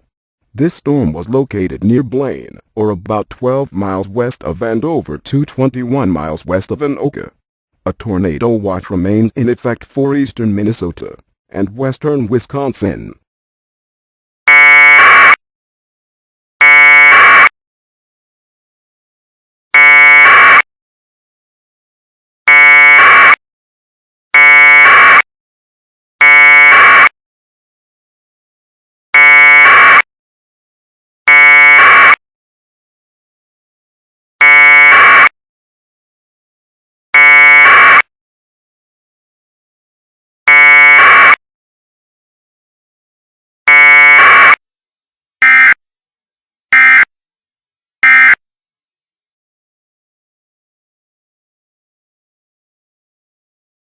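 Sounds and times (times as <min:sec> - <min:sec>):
harsh electronic alert buzzer: 0:14.5 - 0:15.4, 0:16.6 - 0:17.5, 0:19.8 - 0:20.6, 0:22.5 - 0:23.4, 0:24.4 - 0:25.2, 0:26.2 - 0:27.1, 0:29.2 - 0:30.1, 0:31.3 - 0:32.2, 0:34.4 - 0:35.3, 0:37.2 - 0:38.0, 0:40.5 - 0:41.4, 0:43.7 - 0:44.6, 0:45.4 - 0:45.8, 0:46.8 - 0:47.1, 0:48.0 - 0:48.4.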